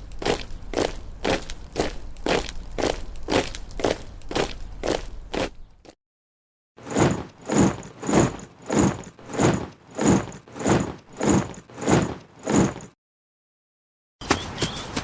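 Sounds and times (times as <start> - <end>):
soldiers marching in step: 6.8 - 12.9.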